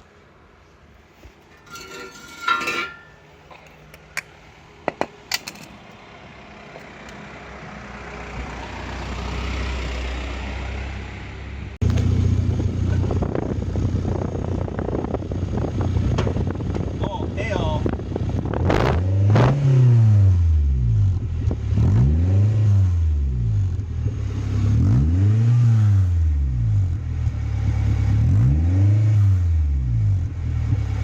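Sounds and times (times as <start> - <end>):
loud low car exhaust: 6.9 - 31.0.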